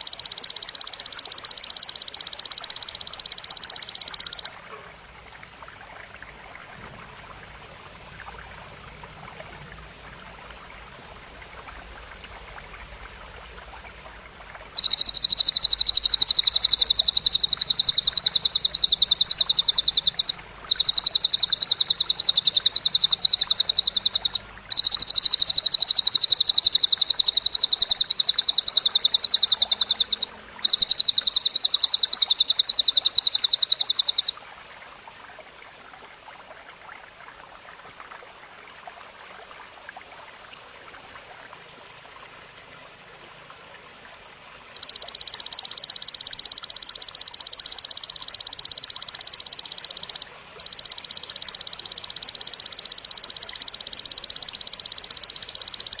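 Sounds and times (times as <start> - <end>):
high rapid pulsing trills: 0.0 - 4.6, 14.8 - 34.3.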